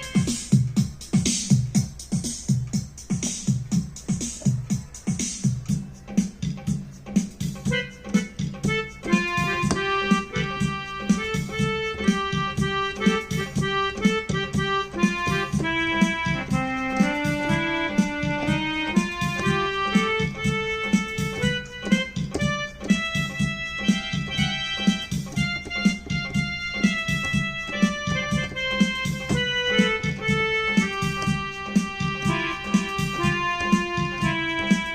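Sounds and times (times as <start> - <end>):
bass: 0.0 - 34.9
keyboard melody: 0.0 - 34.9
steady drum beat: 0.0 - 34.9.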